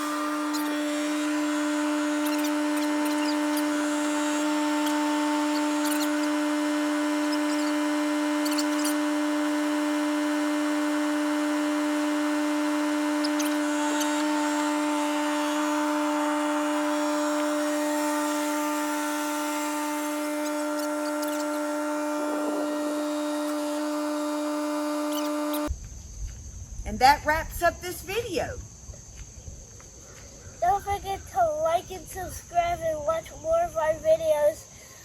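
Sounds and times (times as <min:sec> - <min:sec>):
small motor whining: 0:00.0 - 0:25.8.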